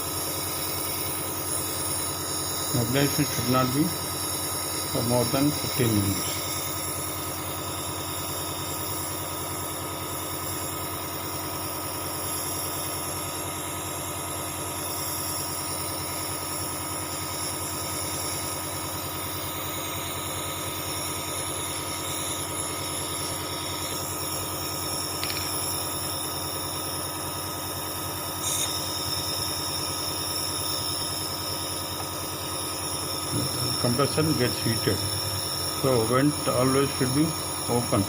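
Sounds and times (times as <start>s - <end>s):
nebulizer compressor humming: 0.0s - 38.0s.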